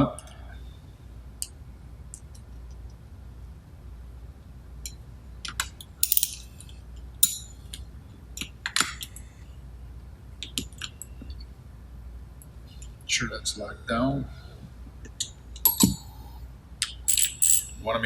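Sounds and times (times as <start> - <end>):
metal parts clinking: 5.8 - 7.7, 17.1 - 18.0.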